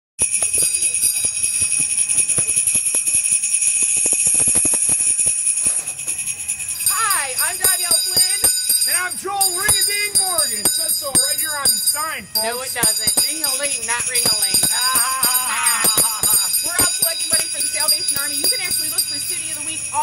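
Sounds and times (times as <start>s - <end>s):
hand bell ringing rapidly: 0.2s - 20.0s
people's voices: 6.6s - 20.0s.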